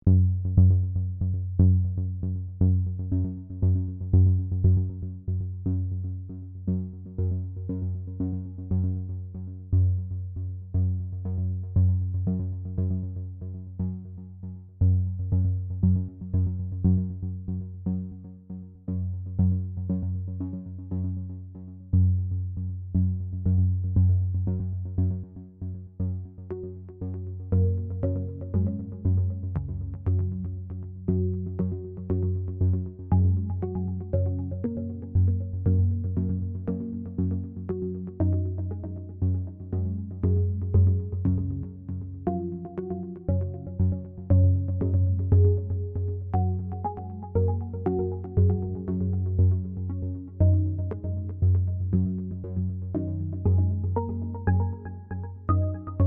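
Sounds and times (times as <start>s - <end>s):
steady bass line: 0.0s - 56.0s
synthesizer repeated notes: 44.8s - 56.0s.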